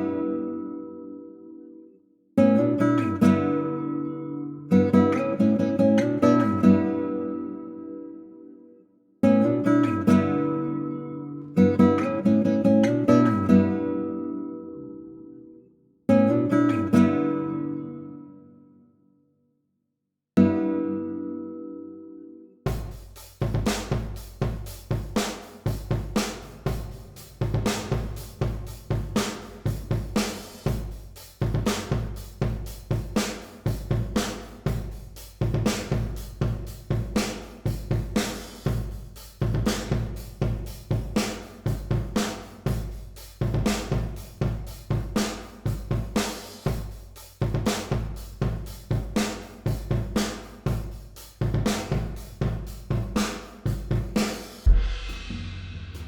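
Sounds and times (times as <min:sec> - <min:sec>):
drum kit playing with reverb: 0:22.7 - 0:56.0.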